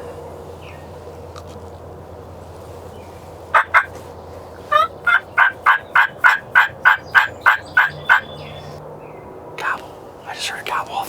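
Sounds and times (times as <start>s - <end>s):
turkey yelping: 3.5s - 4.0s, 4.6s - 8.8s.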